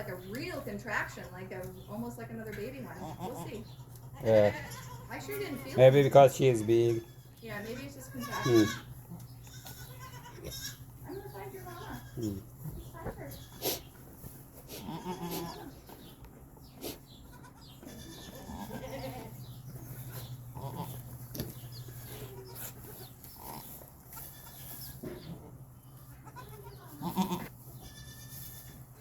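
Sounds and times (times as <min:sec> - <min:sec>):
steady low hum: 0:00.0 - 0:29.0
goats bleating: 0:02.9 - 0:13.9, 0:14.7 - 0:15.8, 0:17.2 - 0:25.0, 0:26.1 - 0:28.8.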